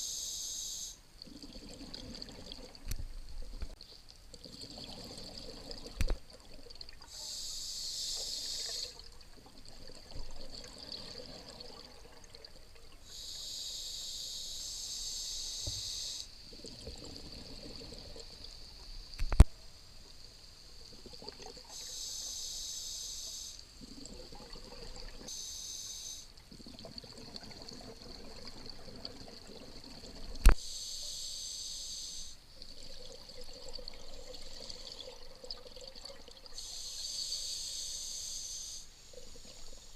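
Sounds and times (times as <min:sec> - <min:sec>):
exhaled bubbles underwater: 0:01.2 - 0:03.8, 0:04.4 - 0:07.1, 0:08.6 - 0:13.2, 0:16.5 - 0:18.6, 0:23.8 - 0:25.3, 0:26.5 - 0:30.6.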